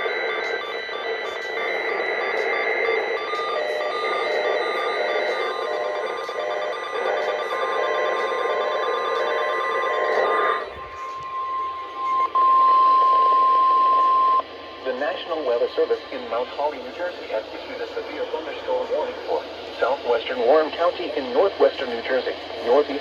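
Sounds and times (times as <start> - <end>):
weather radio alarm tone: 0.0 - 22.2
steady radio tones: 0.0 - 23.0
radio static: 10.0 - 23.0.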